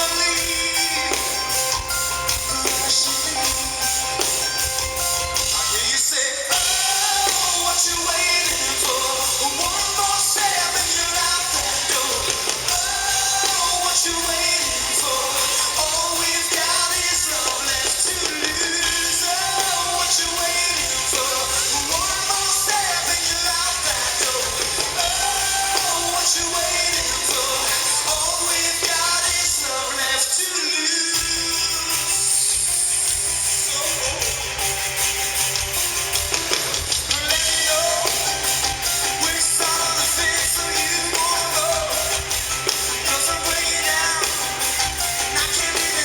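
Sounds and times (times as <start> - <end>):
lead vocal singing: 0.0 - 34.4, 37.0 - 46.0
live rock band playing: 0.0 - 46.0.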